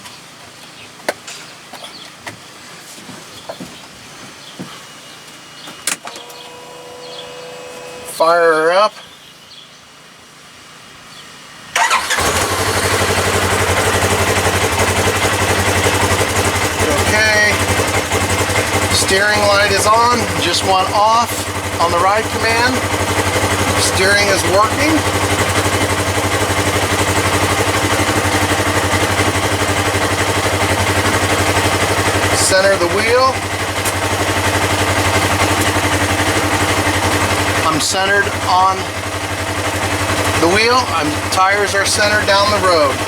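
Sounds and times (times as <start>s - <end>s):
engine cranking and starting: 5.8s - 8.1s, 11.7s - 43.0s
engine idling: 11.7s - 43.0s.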